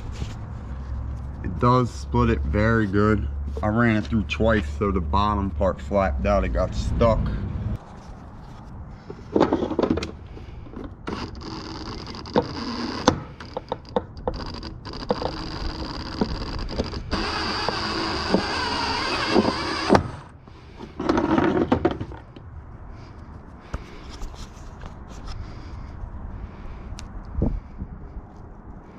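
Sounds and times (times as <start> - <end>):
small motor whining: 14.2 - 20.3.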